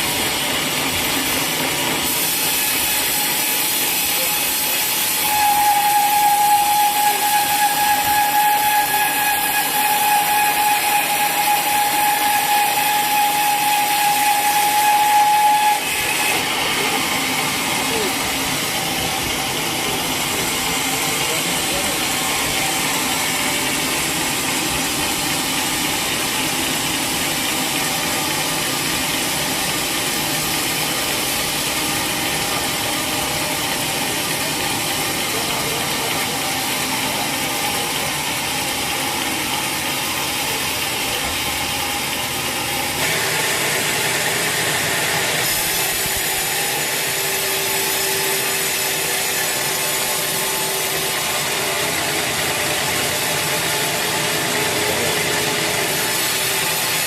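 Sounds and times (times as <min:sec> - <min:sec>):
saw blade grinding through wood: 0:01.6 - 0:25.8, 0:42.7 - 0:57.0.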